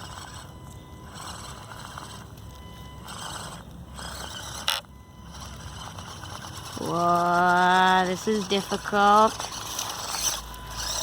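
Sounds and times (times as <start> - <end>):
small electric motor whirring: 0.0 - 11.0
tyres scraping over terrain: 0.0 - 11.0.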